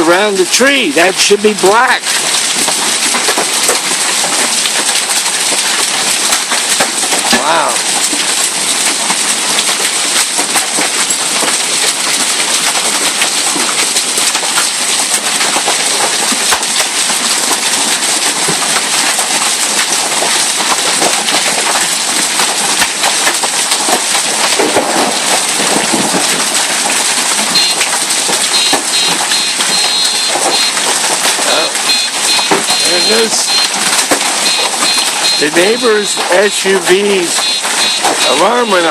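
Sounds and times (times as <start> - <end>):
hailstones pelting down: 0.0 - 38.9
faint car alarm beeping: 27.5 - 27.8, 28.5 - 30.8, 31.5 - 33.8, 34.4 - 36.5, 37.3 - 38.9.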